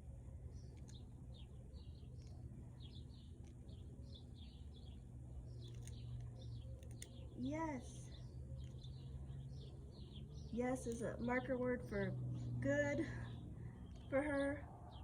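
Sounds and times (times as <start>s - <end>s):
low background hum: 0.0s - 15.0s
songbirds chirping: 0.0s - 15.0s
faint clicks: 0.7s - 1.0s, 5.6s - 7.3s.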